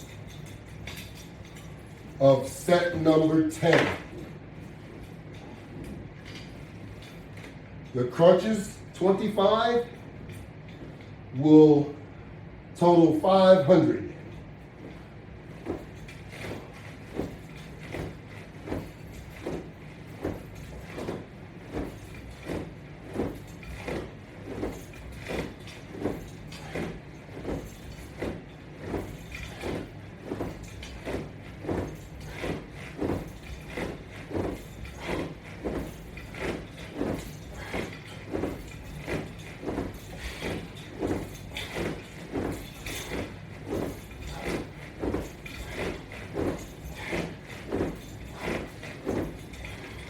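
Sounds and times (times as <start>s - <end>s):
steady low hum: 0.0s - 50.0s
resistance band swishing: 14.6s - 50.0s.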